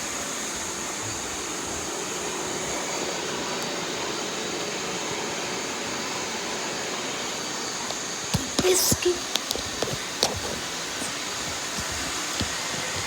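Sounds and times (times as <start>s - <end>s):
robot vacuum motor whirring: 7.8s - 13.0s.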